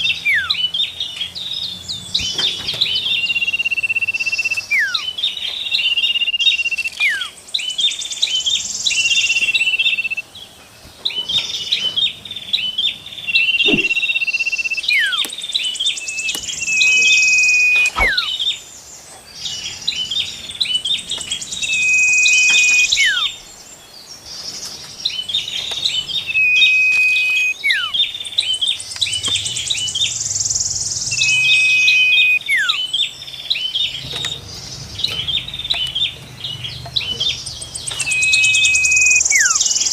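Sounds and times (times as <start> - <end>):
high buzzy bird trill: 0.0 - 10.4, 12.8 - 18.7, 19.4 - 39.9
rapid chipping bird notes: 0.0 - 39.9
bird whistle with falling note: 16.1 - 18.4, 21.6 - 23.3, 26.3 - 28.0, 31.1 - 32.8, 38.0 - 39.7.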